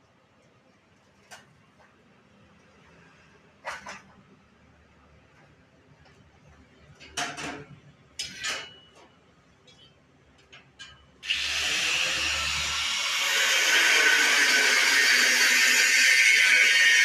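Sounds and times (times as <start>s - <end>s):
handheld power tool running: 11.2s - 17.0s.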